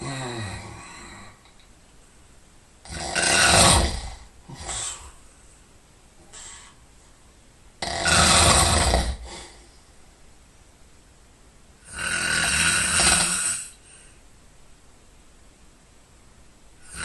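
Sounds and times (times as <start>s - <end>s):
man snoring loudly: 0.0s - 1.4s, 2.9s - 4.8s, 7.8s - 9.4s, 11.8s - 13.8s.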